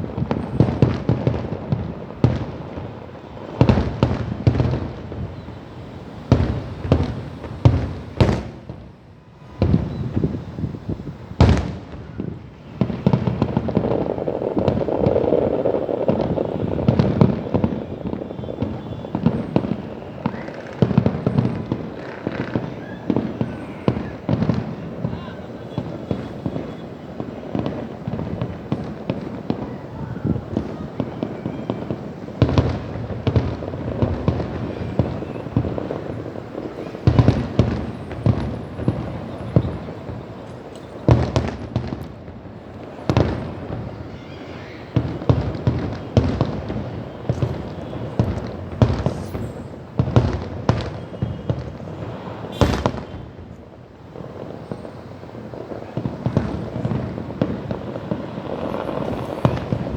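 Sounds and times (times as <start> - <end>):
fireworks bangs: 0.0 - 59.9
fireworks crackling and rumbling: 0.0 - 59.9.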